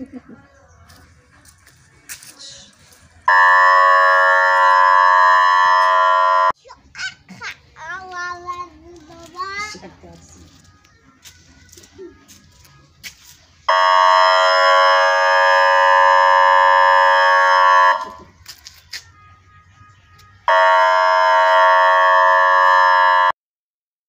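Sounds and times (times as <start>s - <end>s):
electronic alarm tone: 3.3s - 6.6s, 13.7s - 18.3s, 20.4s - 23.4s.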